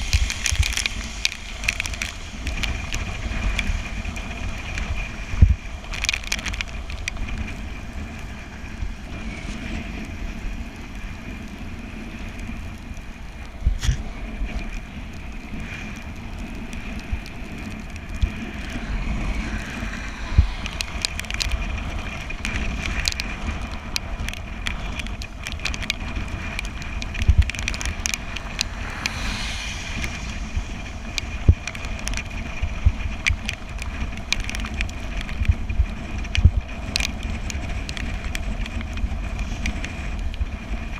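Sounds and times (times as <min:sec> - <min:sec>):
bicycle tyre noise: 0:00.0 - 0:40.9
wind rumbling on microphone: 0:00.0 - 0:40.9
thin high whine: 0:18.3 - 0:22.8, 0:27.7 - 0:33.0.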